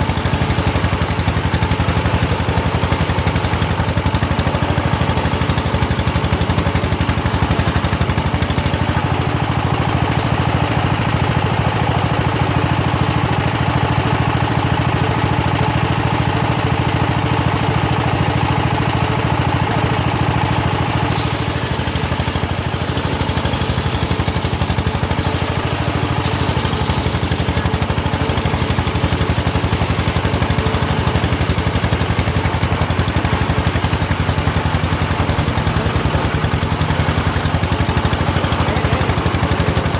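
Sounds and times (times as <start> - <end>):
engine drone: 18.2 - 39.9
saw blade cutting wood hiss: 20.4 - 30.2.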